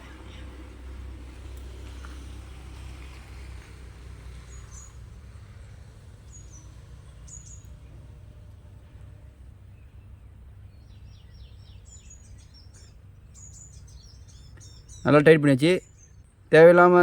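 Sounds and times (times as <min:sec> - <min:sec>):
small bird chirping: 0:04.4 - 0:08.1, 0:09.6 - 0:16.5.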